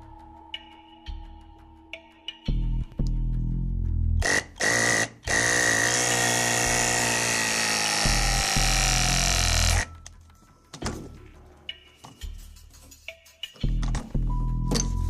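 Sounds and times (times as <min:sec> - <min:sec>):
pipe press tool motor running: 0:04.2 - 0:09.9.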